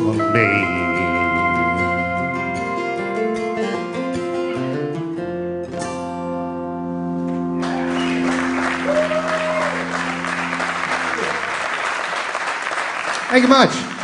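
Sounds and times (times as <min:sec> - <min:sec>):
guitar chord ringing: 0:00.0 - 0:11.5
audience applause: 0:07.6 - 0:14.0.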